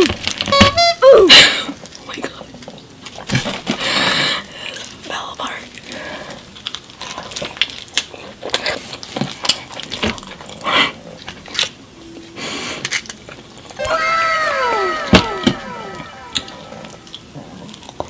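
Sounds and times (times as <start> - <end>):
person chewing food: 5.7 - 11.6
downward sliding tones: 13.8 - 17.3.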